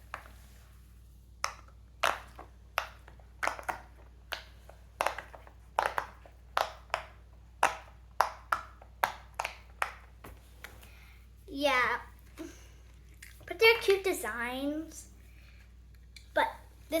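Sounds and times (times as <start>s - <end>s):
fidget toy bubbles popping: 1.4s - 10.1s.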